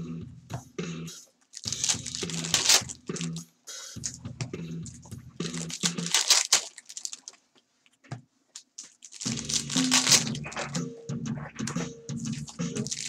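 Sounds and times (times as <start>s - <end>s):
wrappers crinkling and tearing: 1.5s - 3.4s, 5.4s - 7.4s, 8.6s - 10.7s, 12.3s - 13.0s
cards clicking as flicked: 1.6s - 3.4s, 5.5s - 7.4s, 8.6s - 10.4s.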